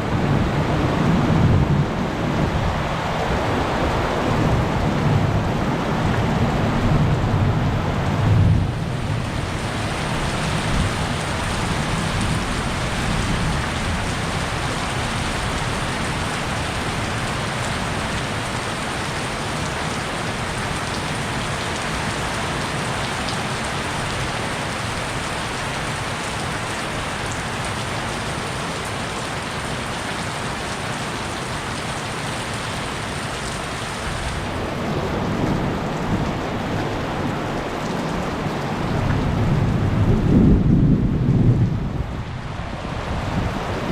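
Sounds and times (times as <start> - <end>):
heavy rain pouring: 0.0 - 43.9
low thunder rumbling: 38.7 - 43.9.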